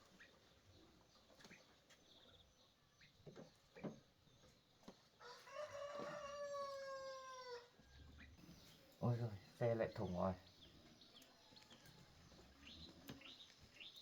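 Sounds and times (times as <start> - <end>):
rooster crowing: 5.2 - 7.8.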